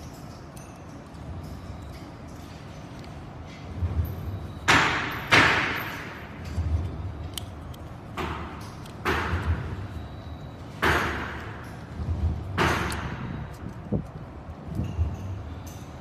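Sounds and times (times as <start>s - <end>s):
low rumbling handling noise: 0.0s - 16.0s.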